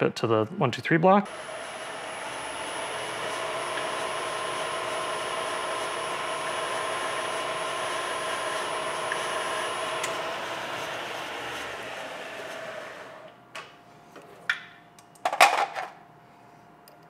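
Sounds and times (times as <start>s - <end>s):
milling machine humming: 1.3s - 13.3s.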